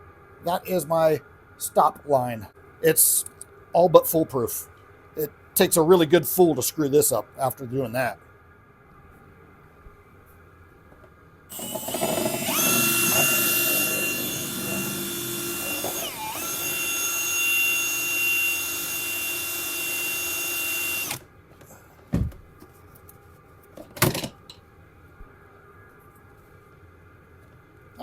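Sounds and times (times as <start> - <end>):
power drill whining: 11.5 - 21.2.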